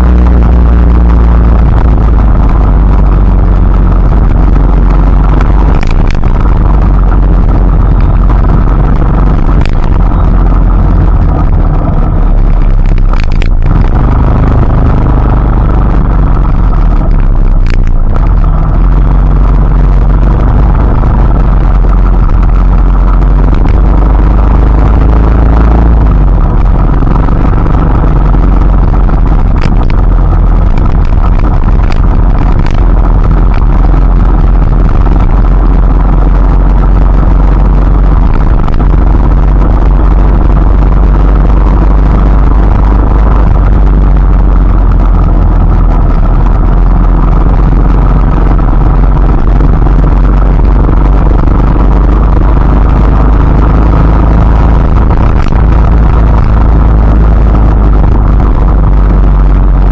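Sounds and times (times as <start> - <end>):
deep rumble: 0.0 - 59.9
faint drop-like ticks: 16.7 - 20.3.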